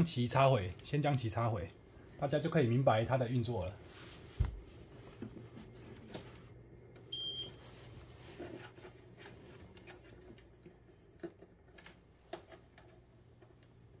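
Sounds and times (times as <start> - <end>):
low steady hum: 0.0 - 14.0
short electronic beep: 7.1 - 7.6.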